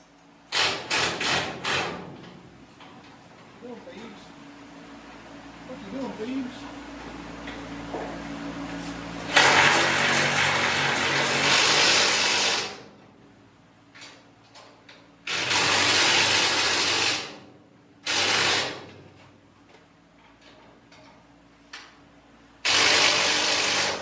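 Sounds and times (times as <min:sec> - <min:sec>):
power tool driving bolts: 0:00.5 - 0:02.0, 0:09.3 - 0:12.8, 0:15.2 - 0:17.4, 0:18.0 - 0:18.9, 0:22.6 - 0:24.0.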